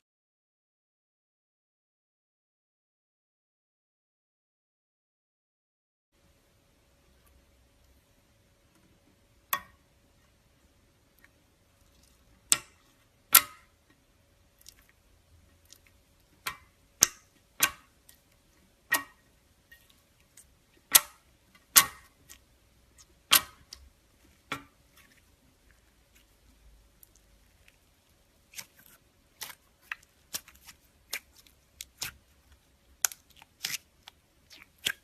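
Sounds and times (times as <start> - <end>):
slime popping: 24.5 - 35.0.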